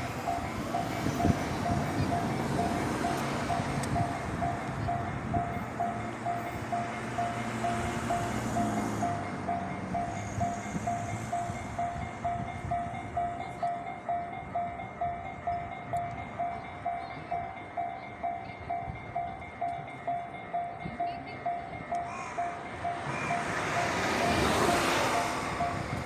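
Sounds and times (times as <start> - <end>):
level-crossing warning bell: 0.0 - 26.0
train running noise: 0.0 - 26.0.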